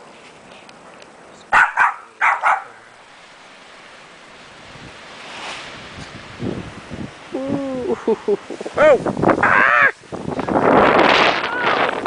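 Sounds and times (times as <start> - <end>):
wind hiss: 0.0 - 12.0
dog barking: 1.5 - 2.8.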